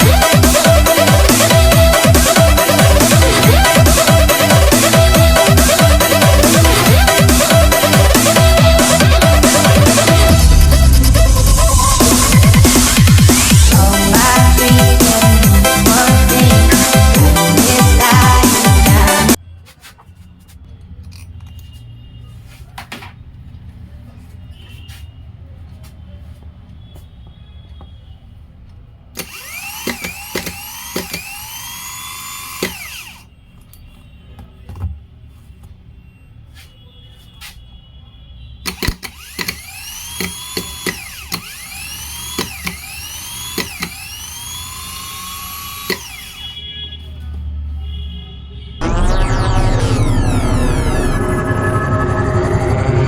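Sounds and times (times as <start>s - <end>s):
background music: 0.0s - 19.4s
starter motor whine: 0.0s - 19.4s, 29.2s - 33.2s, 38.7s - 46.6s, 48.8s - 53.0s
clicks and taps of handled tools: 22.8s - 23.2s, 38.7s - 39.6s
starter motor clicks: 29.2s - 33.2s, 38.7s - 46.4s.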